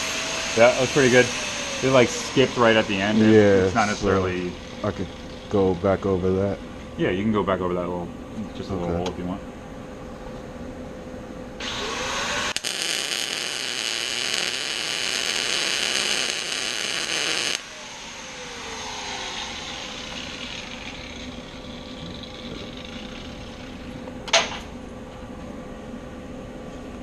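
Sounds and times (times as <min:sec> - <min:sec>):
steady background hum: 0:00.0 - 0:27.0
welding arc hissing: 0:11.6 - 0:24.0.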